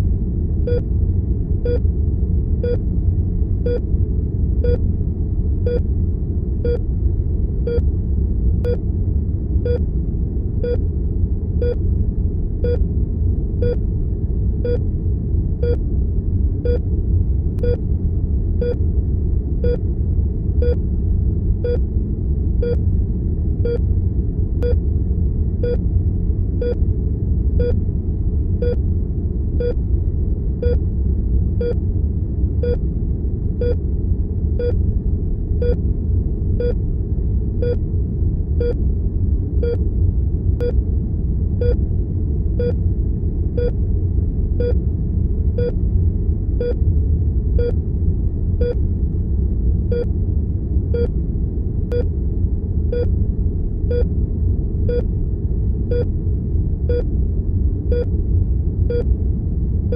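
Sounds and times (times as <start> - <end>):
low room tone rumble: 0.0 - 59.9
heart monitor beeping: 14.6 - 14.8, 16.6 - 16.8, 17.6 - 17.8, 19.6 - 19.8, 20.6 - 20.8, 21.6 - 21.8, 23.6 - 23.8, 31.6 - 31.8, 33.6 - 33.8, 35.6 - 35.8, 38.6 - 38.8, 41.6 - 41.8, 42.6 - 42.8, 46.6 - 46.8, 47.6 - 47.8, 52.9 - 53.1, 54.9 - 55.1, 56.9 - 57.1, 57.9 - 58.1.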